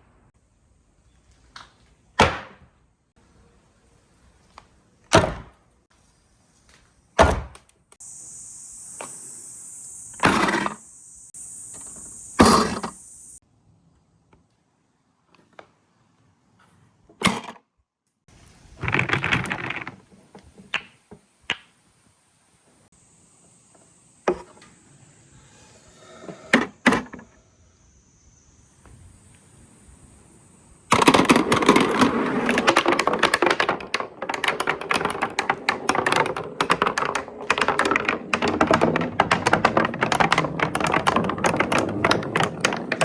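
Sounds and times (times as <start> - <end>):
marbles clacking on track: 30.9 - 43.0
marbles rattling: 31.0 - 43.0.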